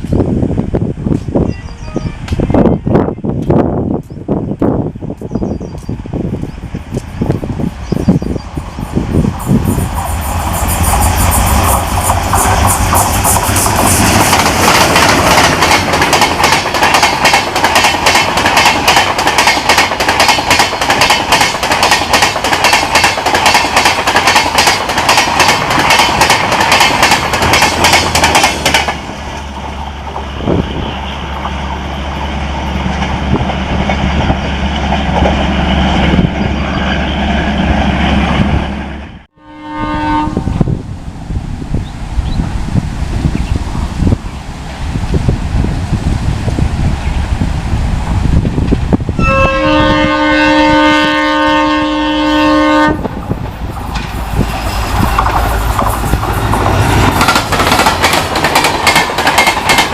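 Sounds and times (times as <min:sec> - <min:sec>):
train wheels clattering over joints: 0:09.7 - 0:30.3, 0:53.4 - 0:59.9.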